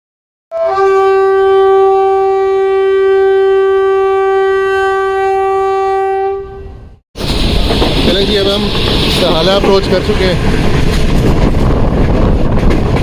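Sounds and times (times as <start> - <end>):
train horn blast: 0.5 - 7.0.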